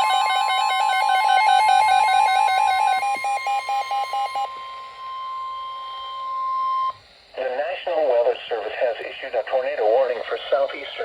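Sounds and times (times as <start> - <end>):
fast pulsing electronic alarm beep: 0.0 - 7.0
steady warning alarm tone: 0.0 - 7.3.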